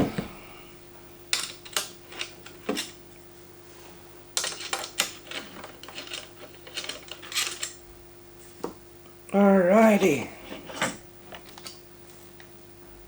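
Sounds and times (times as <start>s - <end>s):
small parts clattering on a table: 4.4s - 7.8s.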